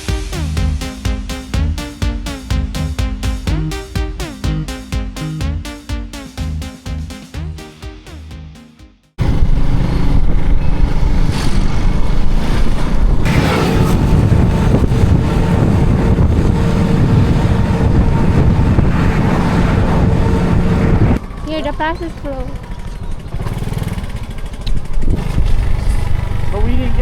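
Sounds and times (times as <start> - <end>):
wind rushing over microphone: 9.2 - 21.2
road vehicle moving: 9.2 - 27.0.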